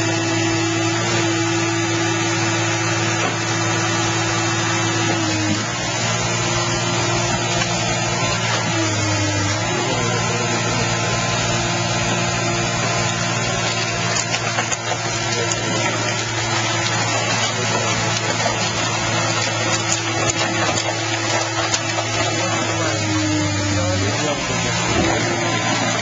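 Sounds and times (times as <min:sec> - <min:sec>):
hydraulic power unit humming: 0:00.0 - 0:26.0.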